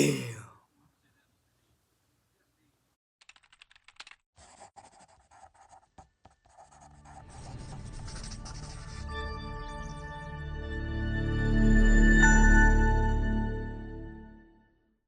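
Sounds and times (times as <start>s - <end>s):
pencil scribbling on paper: 4.4s - 9.1s.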